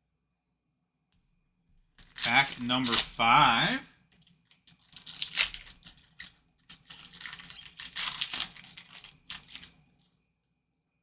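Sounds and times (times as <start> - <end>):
wrapper tearing and crinkling: 2.0 - 3.2, 4.2 - 9.8.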